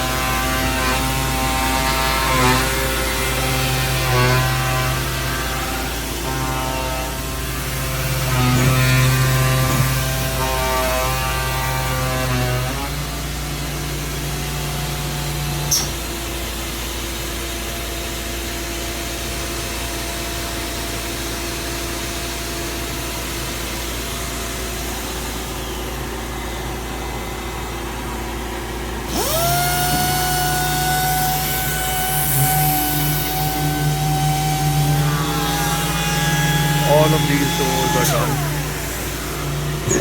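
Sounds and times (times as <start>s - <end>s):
short click: 15.7s - 16.0s
machine motors humming: 29.0s - 40.0s
motor spinning up with rising whine: 29.0s - 40.0s.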